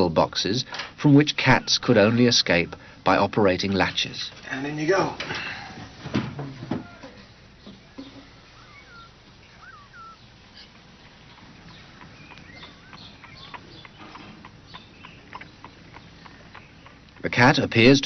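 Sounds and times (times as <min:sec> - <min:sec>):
faint bird chirps: 0:06.9 - 0:17.3.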